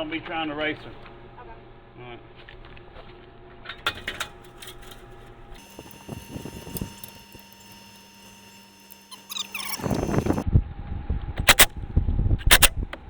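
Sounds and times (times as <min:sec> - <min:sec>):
hand tools clicking against metal: 0:03.7 - 0:10.4.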